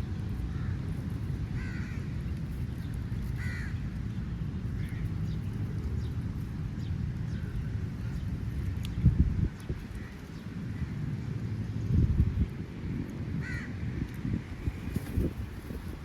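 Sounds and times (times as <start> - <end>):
steady low rumble: 0.0 - 16.0
crow cawing: 1.6 - 2.0, 3.4 - 3.8, 13.4 - 13.8.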